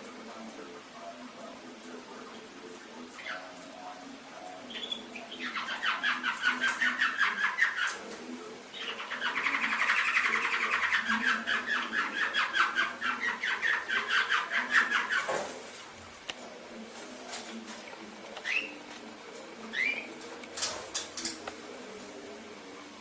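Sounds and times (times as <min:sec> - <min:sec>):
canary singing trills: 0:03.2 - 0:03.6, 0:04.6 - 0:08.0, 0:08.7 - 0:15.3, 0:18.4 - 0:18.9, 0:19.7 - 0:20.2.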